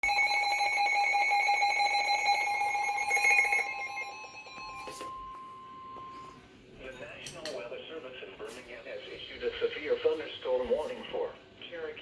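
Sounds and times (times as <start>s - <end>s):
two-tone alarm: 0.0s - 6.5s.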